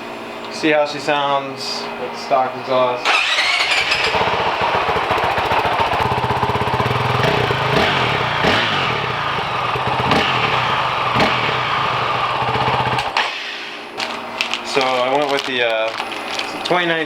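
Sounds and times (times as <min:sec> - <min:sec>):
motorcycle engine idling and revving: 0:03.1 - 0:13.4.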